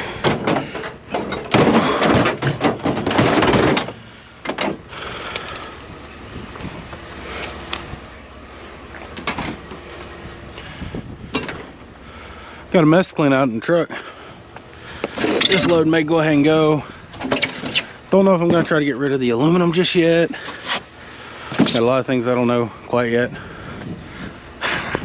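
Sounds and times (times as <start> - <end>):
scrap rattling and scraping clatter: 0.1 - 5.9, 17.1 - 18.8, 20.4 - 21.8.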